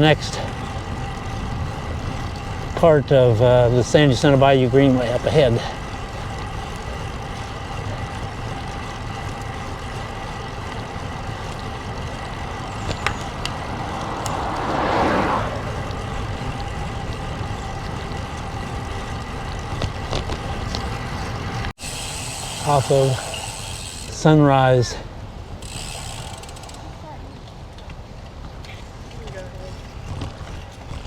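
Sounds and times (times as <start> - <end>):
wind rushing on microphone: 12.2 - 18.4.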